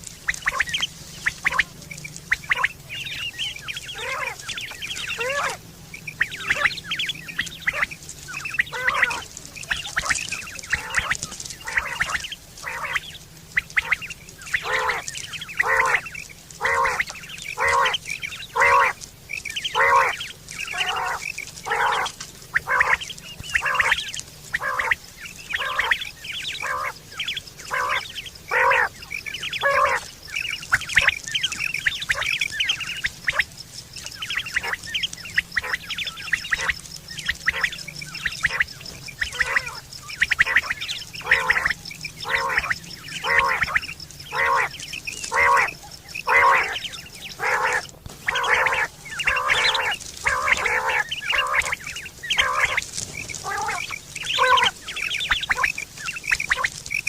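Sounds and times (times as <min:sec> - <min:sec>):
quail calling: 0:00.0 - 0:57.0.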